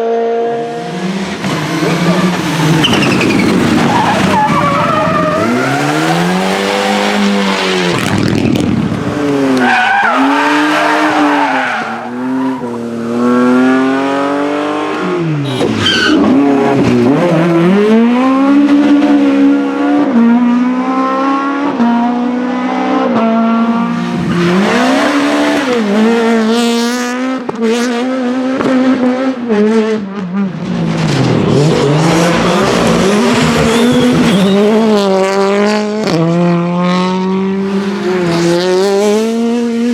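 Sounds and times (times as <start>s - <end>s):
rally car engines revving past: 0.0s - 39.9s.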